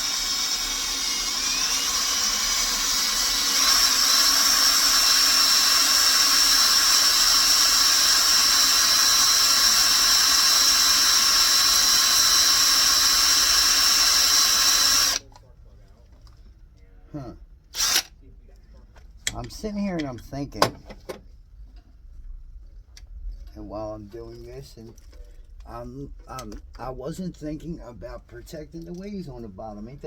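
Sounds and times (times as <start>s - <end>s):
electric drill whining: 0.0s - 15.2s, 17.8s - 18.1s.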